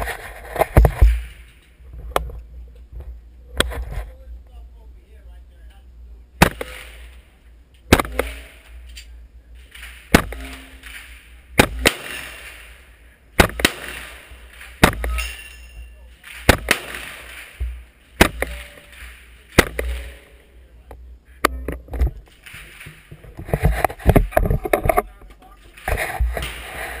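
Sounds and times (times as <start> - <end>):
gunshots with short echo: 6.4 - 7.2, 7.9 - 8.7, 9.6 - 15.4, 16.2 - 20.5.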